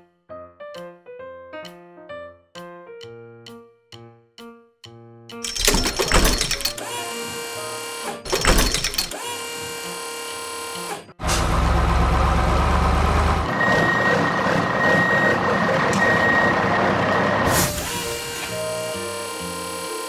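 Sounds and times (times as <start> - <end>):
heavy truck engine running: 10.9 - 20.0.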